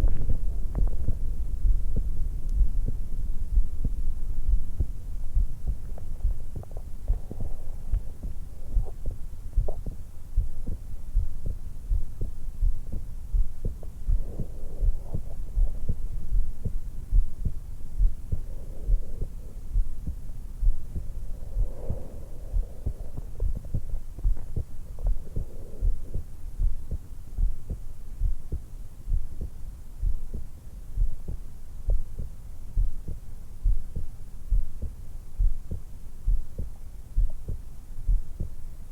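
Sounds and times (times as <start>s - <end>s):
soft breathing: 0.0s - 27.8s
low dull heartbeat: 0.0s - 38.9s.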